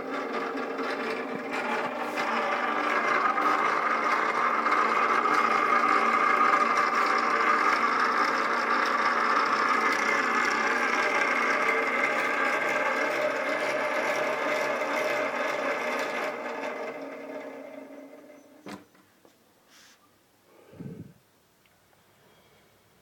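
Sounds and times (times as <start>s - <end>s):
motor and flywheel whirring: 0.0s - 18.8s.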